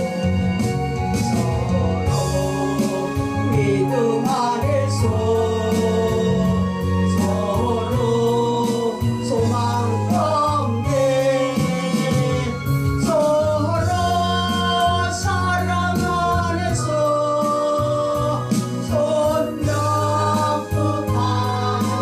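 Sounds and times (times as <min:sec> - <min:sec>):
steady beat: 0:00.0 - 0:22.0
sustained bass notes: 0:00.0 - 0:22.0
voices singing a hymn: 0:01.1 - 0:22.0.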